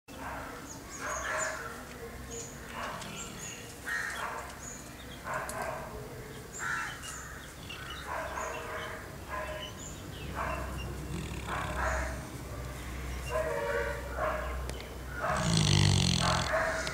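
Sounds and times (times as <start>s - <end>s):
dog snoring: 11.0s - 12.2s, 15.2s - 16.9s.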